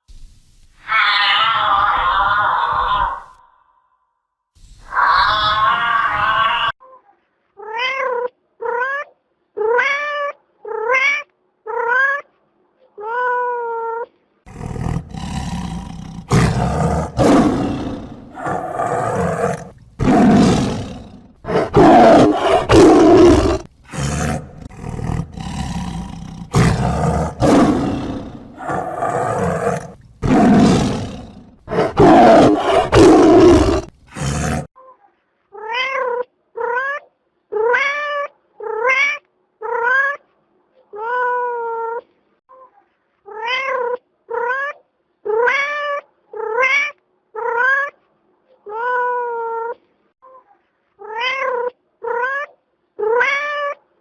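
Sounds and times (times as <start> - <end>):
big cat roaring and growling: 14.5 - 34.7
cat meowing: 51.0 - 53.8.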